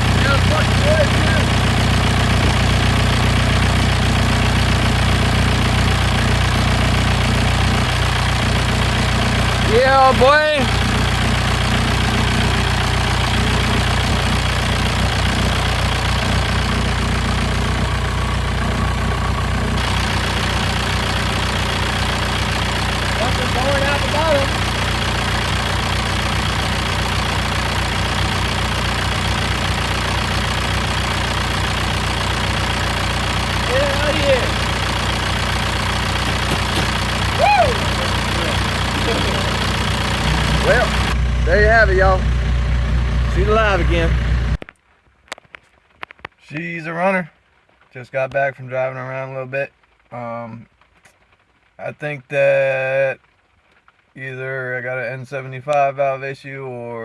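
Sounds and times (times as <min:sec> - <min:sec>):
diesel engine idling: 0:00.0 - 0:44.6.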